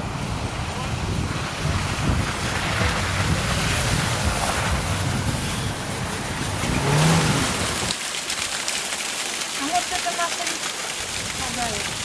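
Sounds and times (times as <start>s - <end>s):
steady low rumble: 0.0s - 7.9s
wind buffeting microphone: 0.0s - 7.9s.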